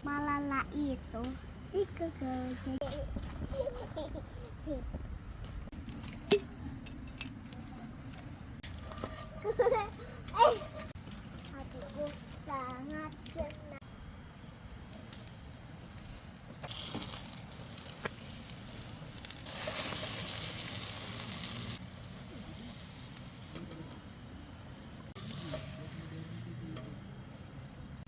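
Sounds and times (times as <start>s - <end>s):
omelette sizzling in hot oil: 16.5s - 26.7s.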